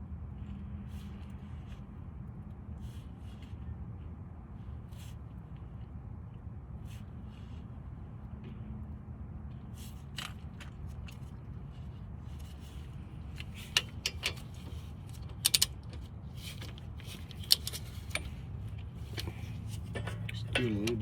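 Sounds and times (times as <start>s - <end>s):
metallic clicks and clinks: 13.4s - 18.4s.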